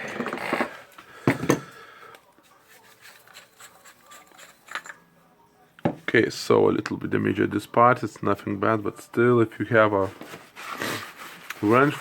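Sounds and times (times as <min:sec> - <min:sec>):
light metal clicks and rubbing: 0:02.8 - 0:05.1.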